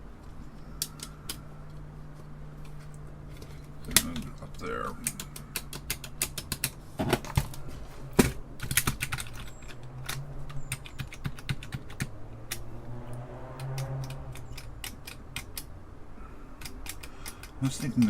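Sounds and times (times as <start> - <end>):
keyboard keys clicking: 2.6 - 7.6, 8.2 - 12.7, 13.6 - 15.7, 16.6 - 18.0.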